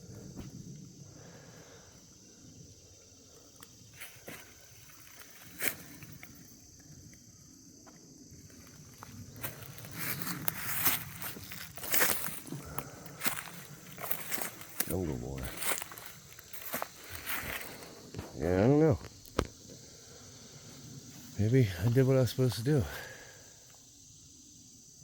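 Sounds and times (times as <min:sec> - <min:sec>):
footsteps through dry brush: 0:03.9 - 0:06.4, 0:08.4 - 0:18.4.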